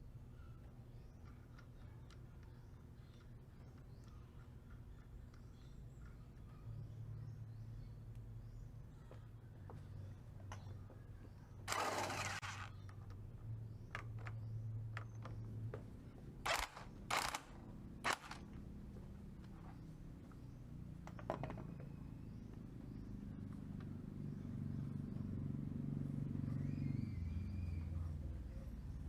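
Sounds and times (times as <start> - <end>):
low engine hum: 21.7 - 29.0.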